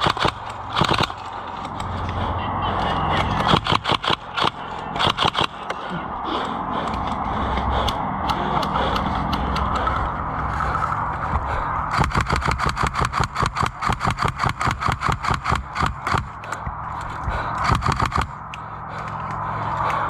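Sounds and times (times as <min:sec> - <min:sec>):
airsoft gun rapid firing: 0:00.0 - 0:01.3, 0:03.4 - 0:05.6, 0:11.9 - 0:16.4, 0:17.6 - 0:18.4
steady low hum: 0:00.0 - 0:20.0.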